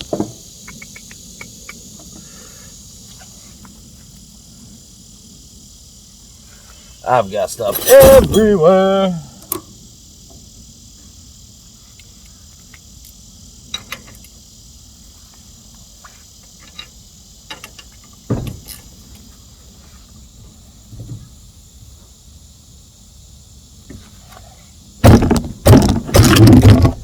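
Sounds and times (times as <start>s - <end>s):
thump: 0.0s - 0.4s, 7.8s - 8.5s, 18.3s - 18.7s, 20.9s - 21.3s, 25.0s - 27.0s
insects chirring: 0.0s - 27.0s.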